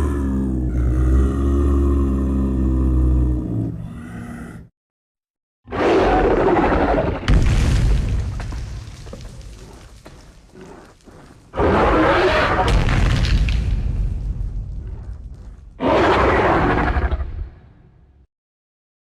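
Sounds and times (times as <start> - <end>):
deep dinosaur roars: 0.0 - 4.7, 5.7 - 7.3, 9.4 - 12.9, 14.8 - 17.6
heavy low rumble: 12.7 - 15.8.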